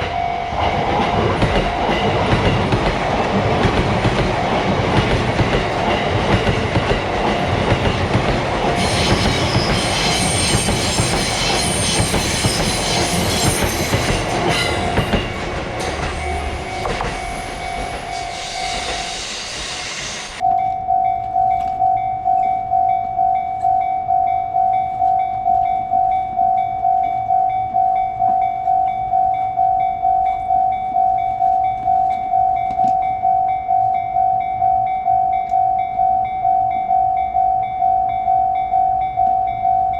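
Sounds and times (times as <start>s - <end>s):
level crossing warning bell: 0.0s - 19.2s, 20.4s - 39.9s
train wheels clattering: 0.0s - 20.4s.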